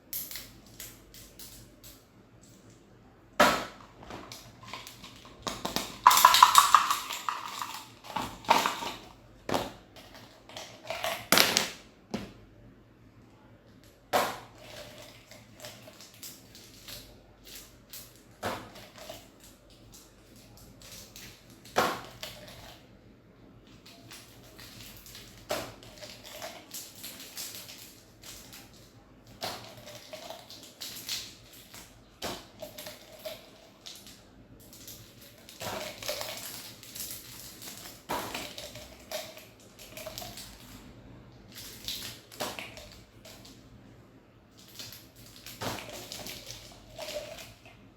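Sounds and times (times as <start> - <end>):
items tapping and clicking: 0.0 - 12.4, 23.6 - 43.7, 44.5 - 47.9.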